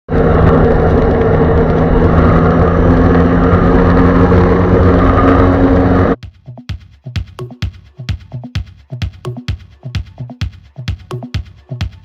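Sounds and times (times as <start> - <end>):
jet ski engine running: 0.1 - 6.2
wind noise: 0.1 - 6.2.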